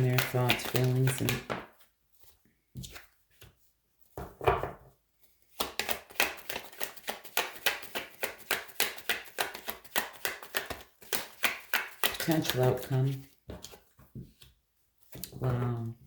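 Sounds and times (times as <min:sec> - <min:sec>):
cards being shuffled: 0:00.0 - 0:03.6, 0:05.4 - 0:15.4.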